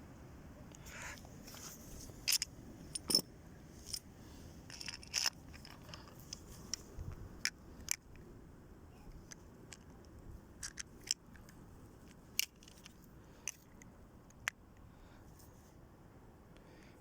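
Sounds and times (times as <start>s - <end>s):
metal parts clinking: 1.5s - 4.0s, 4.7s - 6.8s.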